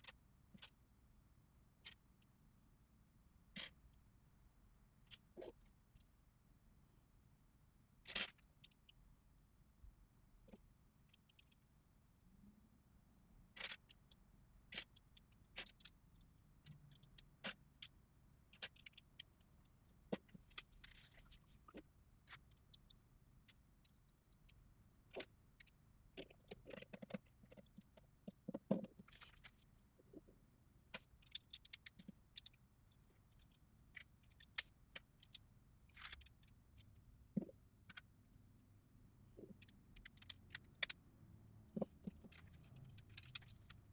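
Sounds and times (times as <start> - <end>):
plastic bricks clicking together: 39.5 - 41.0.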